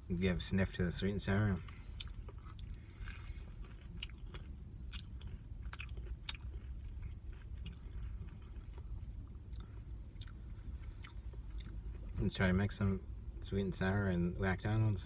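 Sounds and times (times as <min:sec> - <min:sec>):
low background rumble: 0:00.0 - 0:15.0
chewing and biting: 0:01.6 - 0:12.2.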